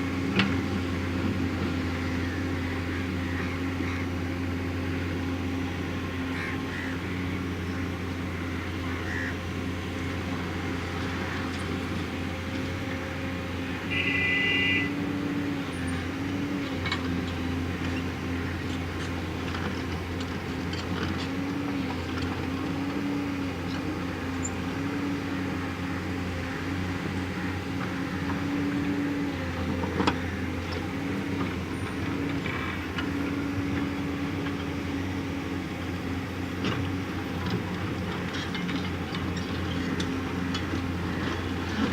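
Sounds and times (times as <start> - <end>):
backhoe diesel engine running: 0.0 - 41.9
brief high tone: 13.9 - 15.0.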